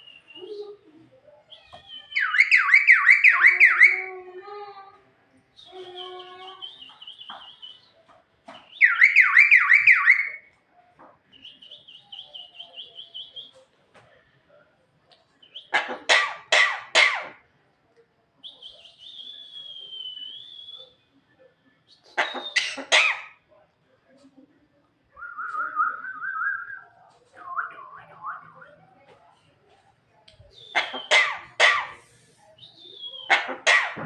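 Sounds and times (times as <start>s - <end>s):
bird trilling: 1.6s - 4.1s, 22.1s - 23.3s, 30.6s - 32.0s
bird harsh rasps: 15.5s - 17.4s, 22.0s - 23.4s, 30.6s - 34.0s.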